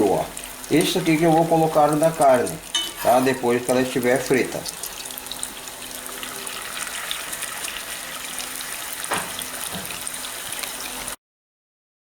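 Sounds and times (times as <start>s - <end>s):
hot liquid sizzling and bubbling: 0.0s - 11.2s.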